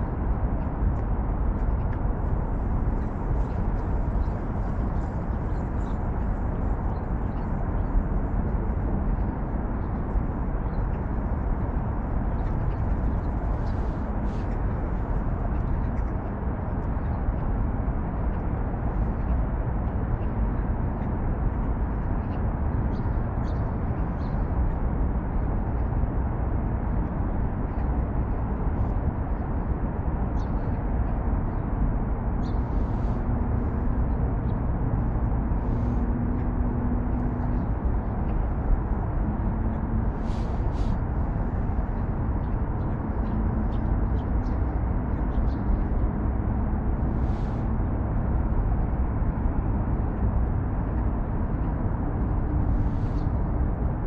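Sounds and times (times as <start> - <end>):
distant road traffic rumble: 31.6 - 53.8.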